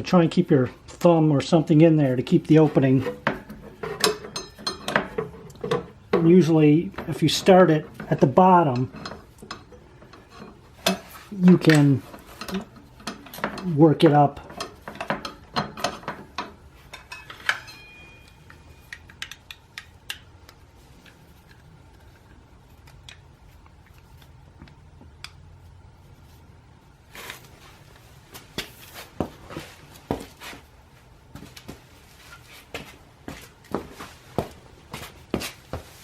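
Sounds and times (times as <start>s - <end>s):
metal brake parts clicking: 2.7s - 13.7s, 14.4s - 24.0s.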